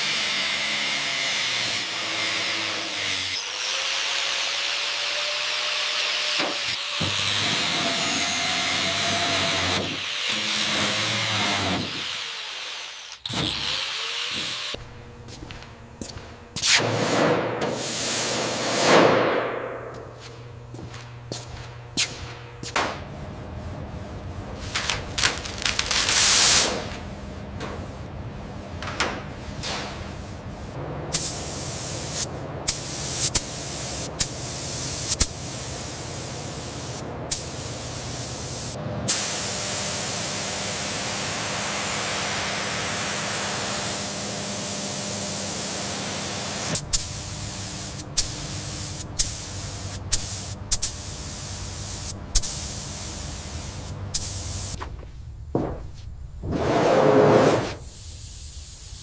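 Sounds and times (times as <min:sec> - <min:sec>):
air tool hissing: 0:31.1 - 0:39.6, 0:46.4 - 0:54.8, 0:57.7 - 0:59.0.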